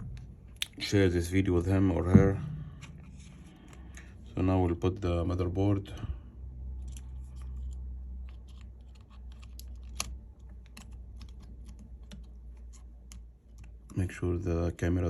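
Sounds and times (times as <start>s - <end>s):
steady low hum: 0.0s - 9.1s
small phone parts clicking: 6.8s - 13.9s.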